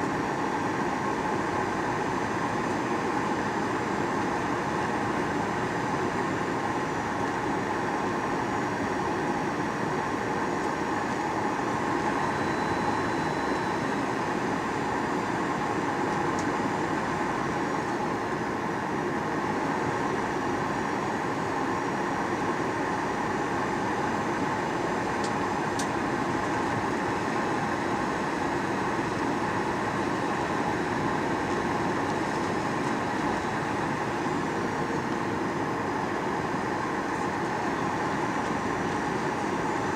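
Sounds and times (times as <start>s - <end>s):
airplane cabin engine noise: 0.0s - 39.9s
faint high whine: 11.7s - 15.2s.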